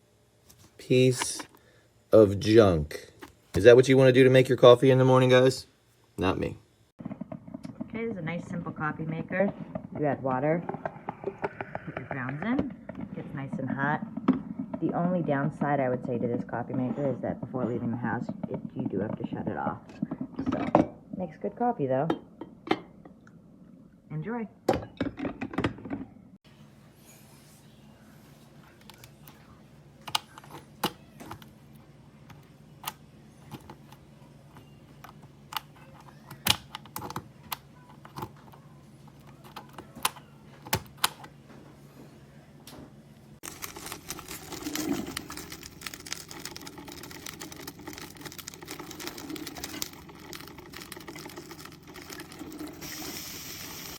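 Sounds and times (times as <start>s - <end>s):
coffee maker brewing gurgle: 6.2s - 23.5s, 43.4s - 53.9s.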